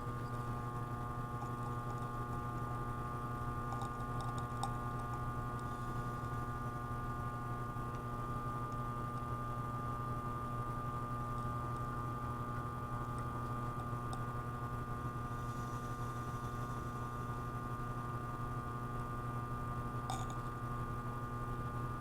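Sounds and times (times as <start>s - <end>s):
electrical mains hum: 0.0s - 22.0s.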